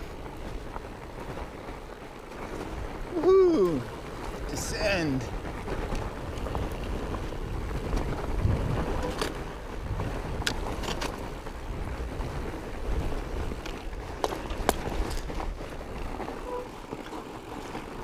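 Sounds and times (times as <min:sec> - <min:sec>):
bike tyres rolling: 0:00.0 - 0:18.0
wind rushing over microphone: 0:00.0 - 0:18.0
ticks and knocks from bike: 0:10.3 - 0:11.4.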